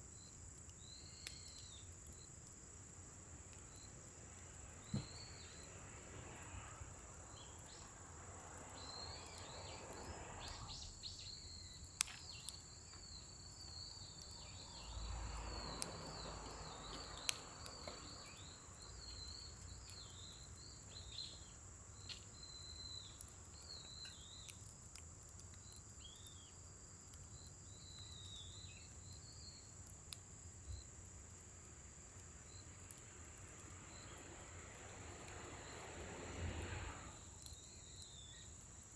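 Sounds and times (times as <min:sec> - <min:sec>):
wood fire crackling and popping: 0:00.0 - 0:38.9
high insect drone: 0:00.8 - 0:23.0, 0:30.4 - 0:38.6.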